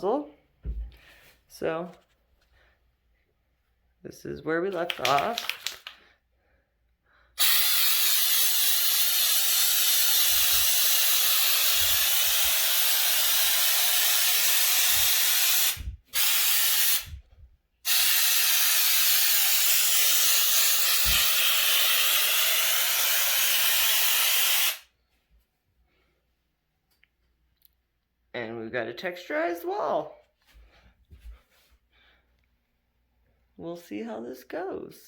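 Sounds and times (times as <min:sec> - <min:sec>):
aerosol spray hissing: 0:07.4 - 0:17.2, 0:17.8 - 0:24.9.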